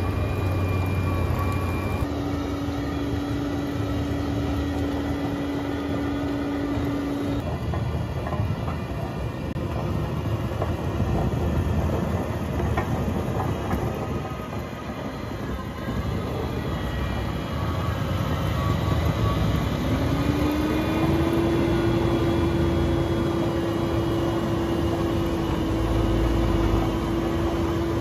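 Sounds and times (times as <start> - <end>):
diesel engine running hard: 0.0 - 28.0.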